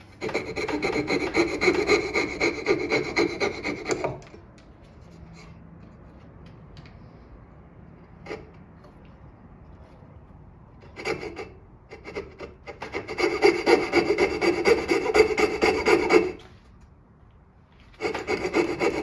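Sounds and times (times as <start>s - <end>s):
sanding wood by hand: 0.2s - 4.0s, 11.0s - 16.4s, 18.0s - 19.0s.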